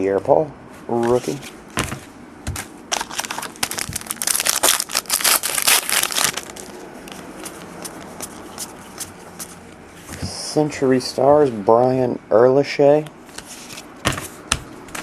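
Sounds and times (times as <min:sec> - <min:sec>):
plastic wrapper crinkling: 0:02.9 - 0:08.3.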